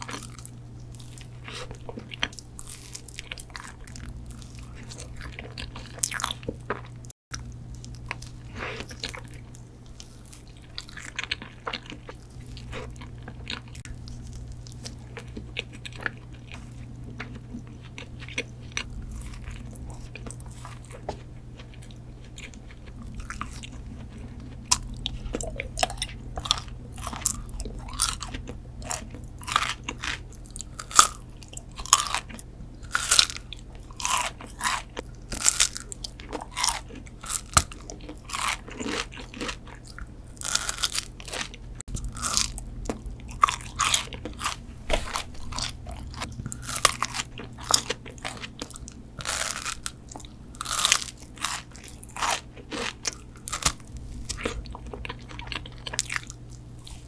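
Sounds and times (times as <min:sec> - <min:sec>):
faint low hum: 0:00.0 - 0:57.0
soft chewing: 0:00.0 - 0:57.0
crisp bites and crunches: 0:24.7 - 0:56.9.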